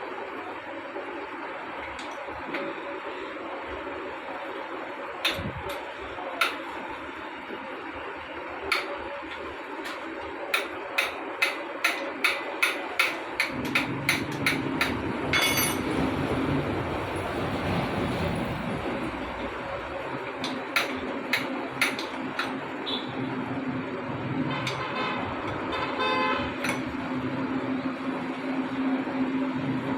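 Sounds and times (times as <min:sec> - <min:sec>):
hammer tapping on metal: 0:10.5 - 0:15.8, 0:20.4 - 0:22.6.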